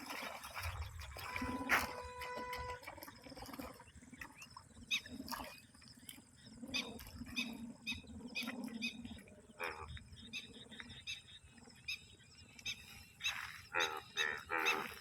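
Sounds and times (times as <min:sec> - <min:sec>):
bullfrogs croaking in chorus: 0:06.7 - 0:15.0.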